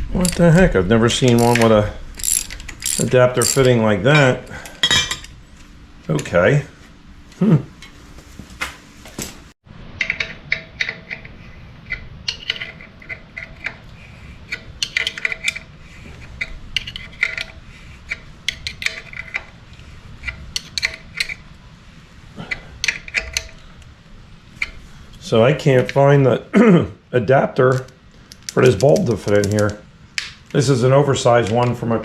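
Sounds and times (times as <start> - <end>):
small metal parts clinking: 0.1 - 5.4.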